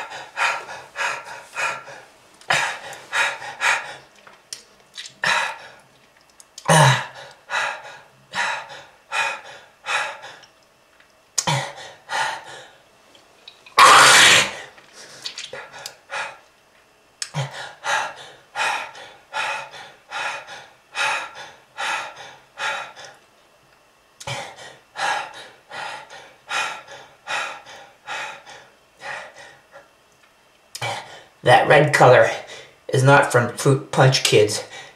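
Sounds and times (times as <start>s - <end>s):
loud hacking cough: 6.7s - 7.1s, 13.8s - 14.6s
person coughing harshly: 6.7s - 7.2s, 13.8s - 14.7s.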